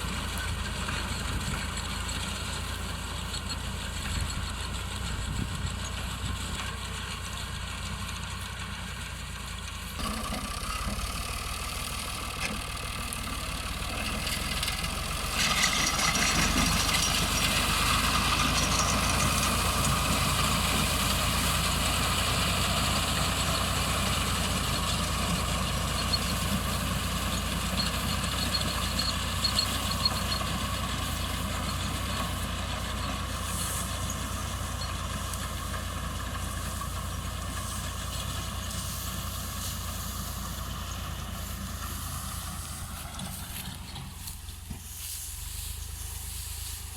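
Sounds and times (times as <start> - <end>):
thresher and tractor engine running: 0.0 - 46.9.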